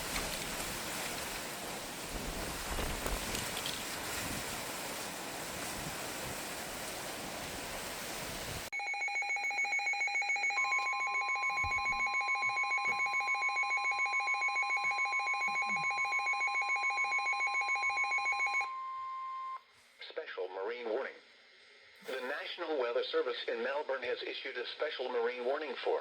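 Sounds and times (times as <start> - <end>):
rapidly pulsing alert beep: 8.8 - 18.7
steady warning alarm tone: 8.8 - 19.6
radio static: 22.0 - 26.0.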